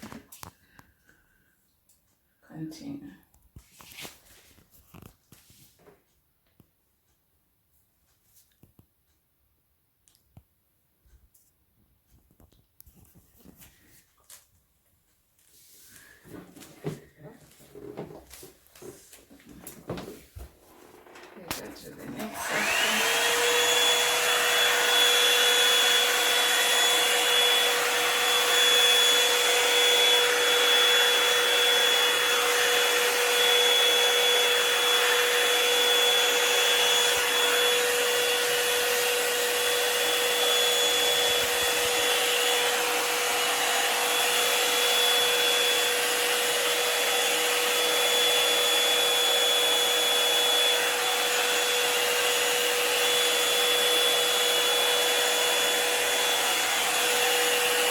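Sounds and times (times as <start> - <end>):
hair dryer brush blowing: 0.0 - 0.5, 15.5 - 57.9.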